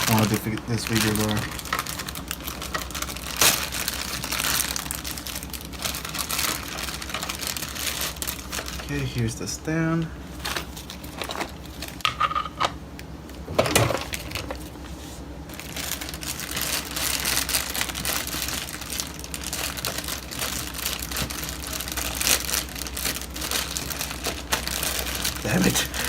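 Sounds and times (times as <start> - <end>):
plastic packaging crinkling: 0.0 - 12.6, 13.5 - 14.8, 15.5 - 26.0.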